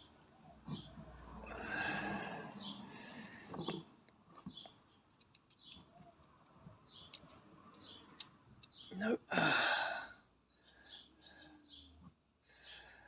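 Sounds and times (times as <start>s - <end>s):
small bird chirping: 2.6s - 9.0s.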